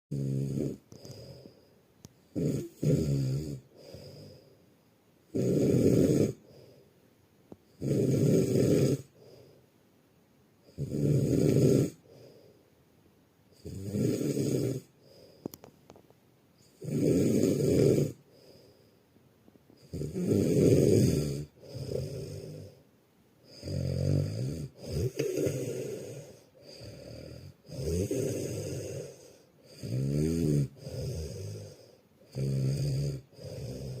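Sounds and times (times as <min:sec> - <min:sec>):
dog snoring loudly: 0:00.1 - 0:01.6, 0:02.3 - 0:04.5, 0:05.3 - 0:06.8, 0:07.7 - 0:09.5, 0:10.6 - 0:12.4, 0:13.6 - 0:15.3, 0:16.6 - 0:18.7, 0:19.8 - 0:22.8, 0:23.4 - 0:34.0.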